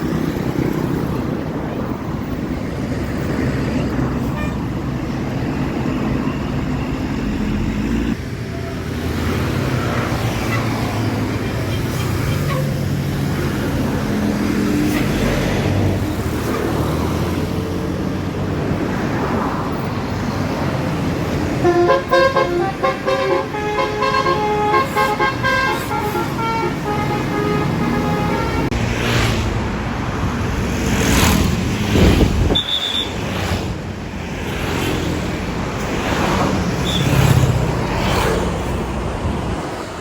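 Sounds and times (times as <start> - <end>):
bus engine: 0.0 - 40.0
traffic rumble: 0.0 - 40.0
musical bus horn melody: 21.6 - 28.8.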